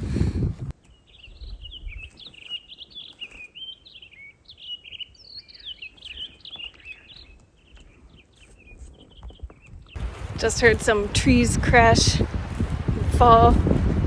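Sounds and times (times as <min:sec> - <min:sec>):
songbird chirping: 0:00.8 - 0:11.2.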